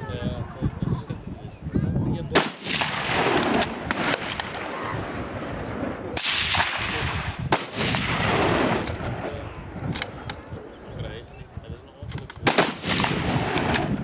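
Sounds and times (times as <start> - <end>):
faint distant gunshots: 2.4 - 9.4, 12.4 - 14.0
loud rifle shots with echo: 2.4 - 9.4, 12.4 - 14.0.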